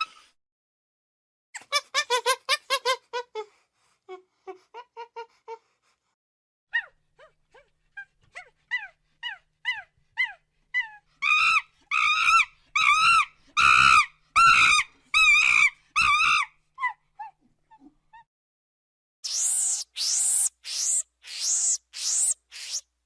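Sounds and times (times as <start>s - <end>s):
monkey calling: 19.2s - 22.8s.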